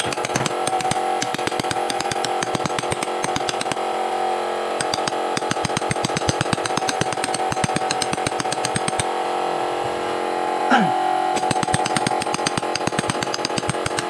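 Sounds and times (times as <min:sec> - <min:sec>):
rapid clicking on wood: 0:00.0 - 0:03.8, 0:04.8 - 0:09.1, 0:11.4 - 0:14.0
power tool whining: 0:00.0 - 0:14.0.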